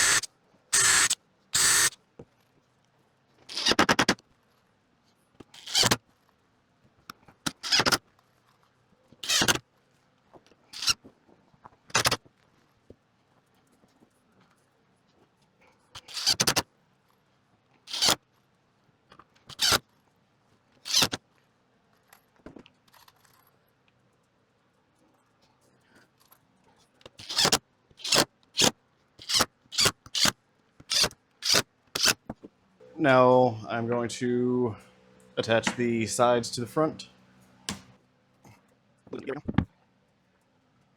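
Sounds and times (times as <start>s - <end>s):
sharp wood rasping bursts: 0.0s - 2.0s, 9.2s - 9.6s, 16.0s - 16.6s, 17.9s - 18.2s, 19.5s - 19.8s, 27.2s - 32.2s.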